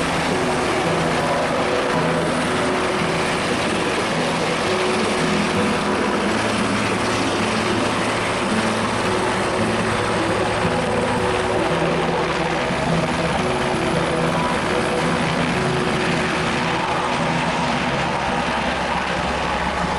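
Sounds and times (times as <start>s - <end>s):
helicopter rotor and engine: 0.0s - 19.9s
low hum: 0.0s - 19.9s.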